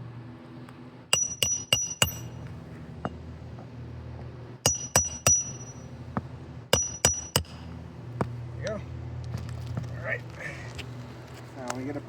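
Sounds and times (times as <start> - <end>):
hammer blows ringing on metal: 1.1 - 2.5, 4.6 - 6.0, 6.7 - 7.7.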